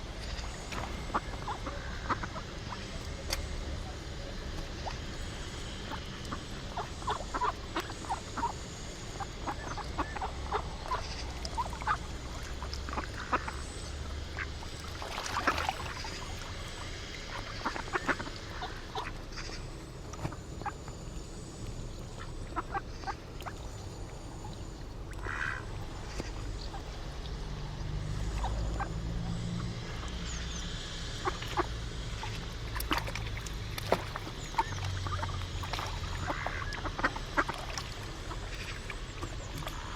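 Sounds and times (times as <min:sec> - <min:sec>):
ducks quacking: 0:01.0 - 0:03.0, 0:05.8 - 0:13.7, 0:25.1 - 0:26.9, 0:31.1 - 0:33.1, 0:33.9 - 0:39.9.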